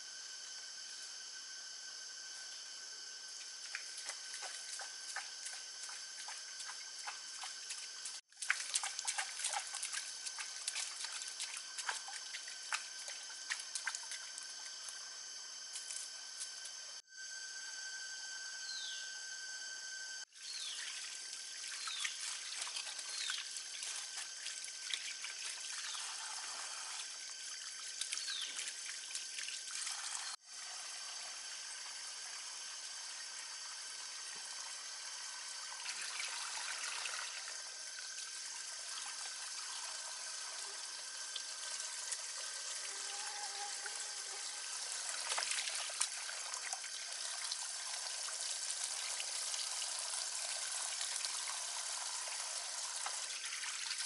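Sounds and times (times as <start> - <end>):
insects droning: 0.0 - 54.0
water trickling and splashing: 3.6 - 14.9, 20.4 - 30.4, 35.4 - 54.0.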